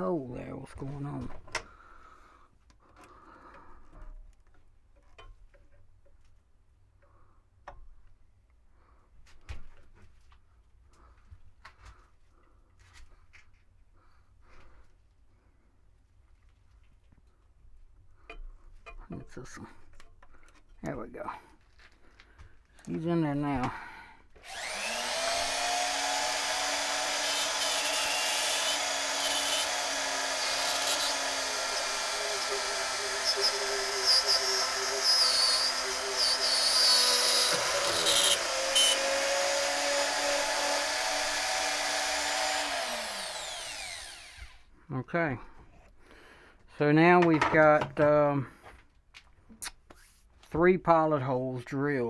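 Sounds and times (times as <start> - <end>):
electric drill whining: 24.4 - 44.7.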